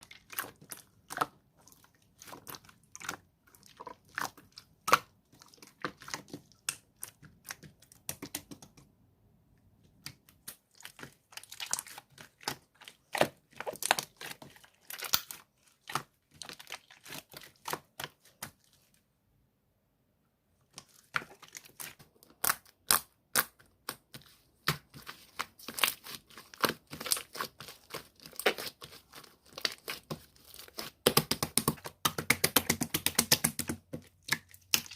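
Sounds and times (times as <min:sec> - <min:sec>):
slime crackling and popping: 0:10.4 - 0:18.1.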